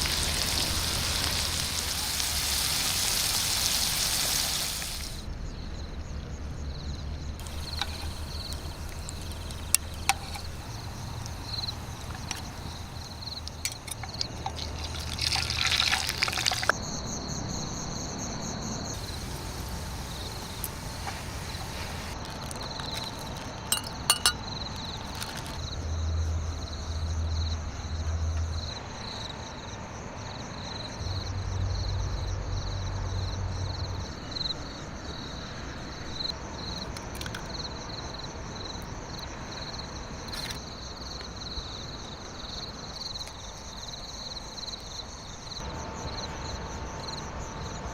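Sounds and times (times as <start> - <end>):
water pouring and trickling: 0.0 - 5.3, 7.4 - 16.8, 19.0 - 25.6
insects chirring: 0.0 - 47.9
clinks: 23.7 - 24.4.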